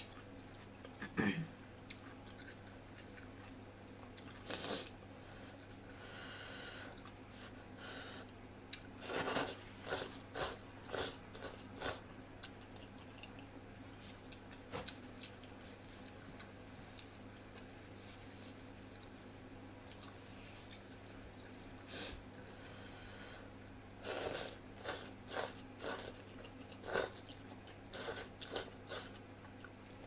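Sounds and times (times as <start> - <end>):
person chewing noodles: 1.8 - 5.0, 8.7 - 17.8, 19.8 - 22.4, 23.9 - 29.8.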